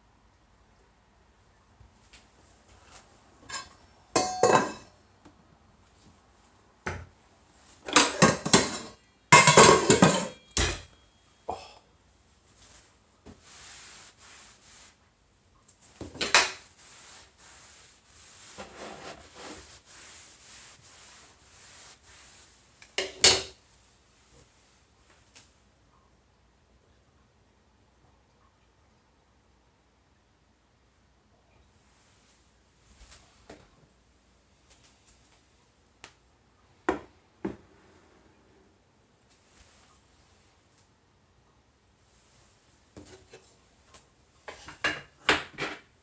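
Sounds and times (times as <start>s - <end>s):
quiet hiss: 0.0s - 46.0s
pots and pans clattering: 3.5s - 4.9s, 7.9s - 10.9s, 23.0s - 23.6s.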